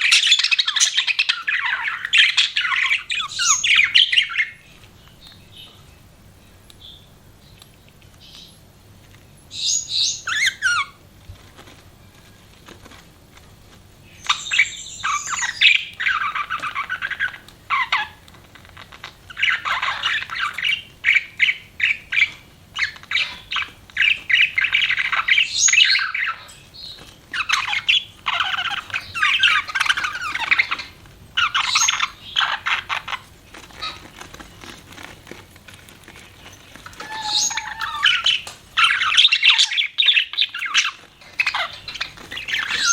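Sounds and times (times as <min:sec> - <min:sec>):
budgerigars chirping and chattering: 0:00.0 - 0:05.9, 0:09.5 - 0:11.0, 0:14.0 - 0:42.9.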